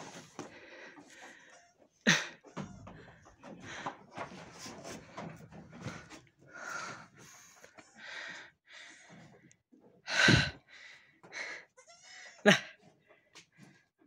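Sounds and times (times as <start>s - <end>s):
goats puffing: 0.0s - 14.0s
goat bleating: 11.8s - 12.6s.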